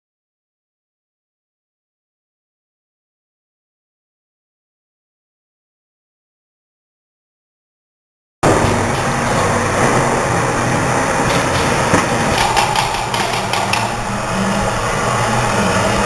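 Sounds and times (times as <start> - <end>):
filling machine running: 8.4 - 16.0
machine parts clicking and clacking: 11.2 - 14.1.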